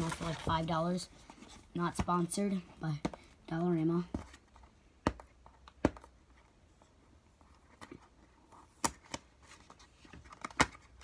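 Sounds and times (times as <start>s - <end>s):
plastic and cardboard crinkling: 0.0s - 3.3s.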